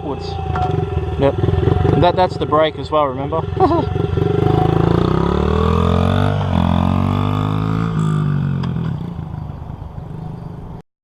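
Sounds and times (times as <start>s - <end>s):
small motorbike engine revving: 0.5s - 2.6s, 3.3s - 9.1s.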